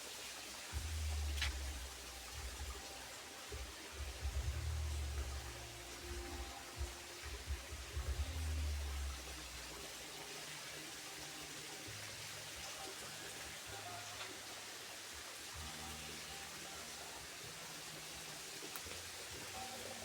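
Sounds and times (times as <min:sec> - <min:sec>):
stream water flowing: 0:00.0 - 0:20.0
low rumble on microphone: 0:03.6 - 0:09.8.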